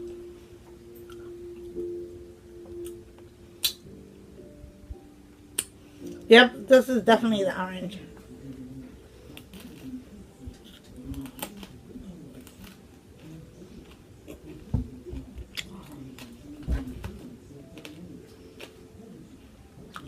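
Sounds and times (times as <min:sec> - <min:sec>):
person eating hard candy: 0:09.3 - 0:18.9.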